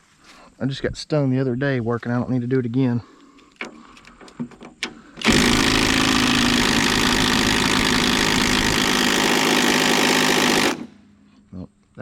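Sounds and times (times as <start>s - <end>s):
impact wrench running: 5.2s - 11.0s.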